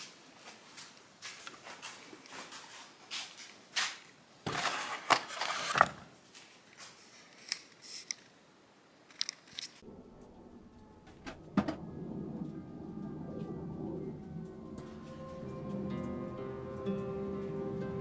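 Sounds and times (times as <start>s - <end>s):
scraping: 4.5s - 6.2s.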